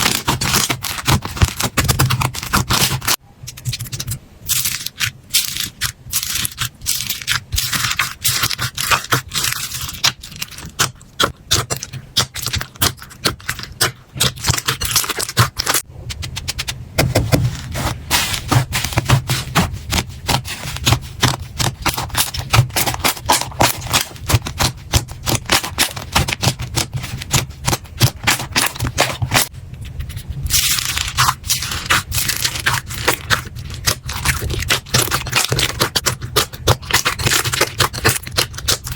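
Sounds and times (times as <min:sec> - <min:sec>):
slime squeezed crackling: 0:00.0 - 0:16.7, 0:30.2 - 0:38.9.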